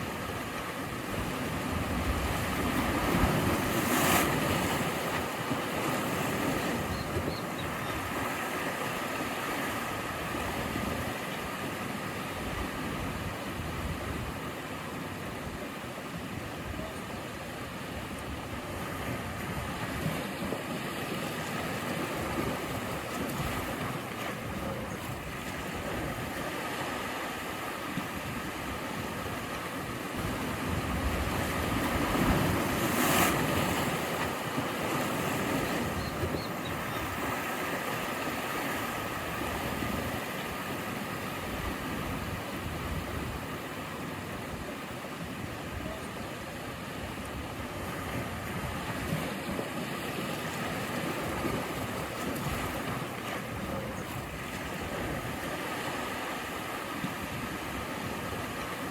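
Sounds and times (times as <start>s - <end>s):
sea waves breaking: 0.0s - 58.9s
wind noise: 30.2s - 37.5s.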